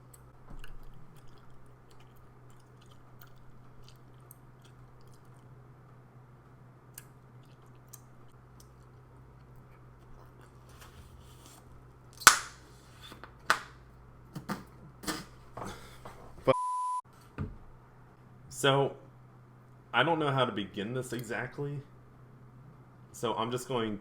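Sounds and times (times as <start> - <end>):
low steady hum: 0.0 - 24.0
short steady beep: 16.6 - 17.0.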